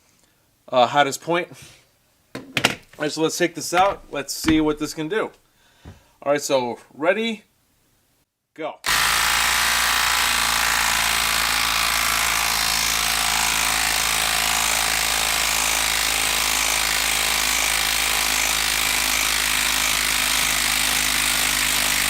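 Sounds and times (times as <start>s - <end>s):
impact driver hammering: 3.8s - 5.0s, 8.9s - 22.0s.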